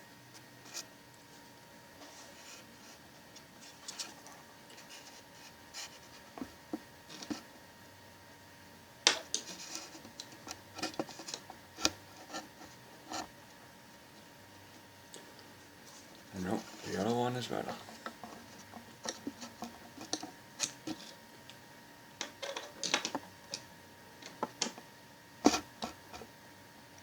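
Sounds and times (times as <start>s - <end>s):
light rubbing and scraping: 2.0s - 7.5s, 9.4s - 13.4s, 15.8s - 21.2s.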